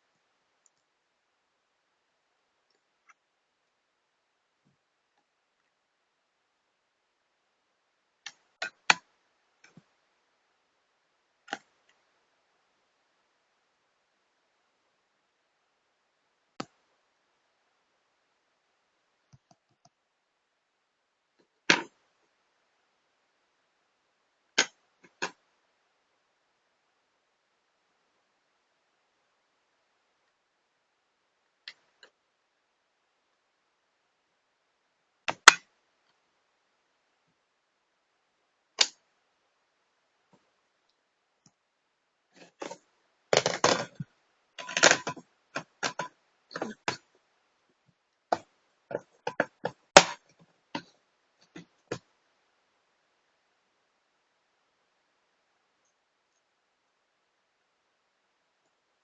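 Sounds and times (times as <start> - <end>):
laptop parts clicking: 35.3 - 35.7, 38.8 - 39.0
plastic clicking and clattering: 43.4 - 47.1.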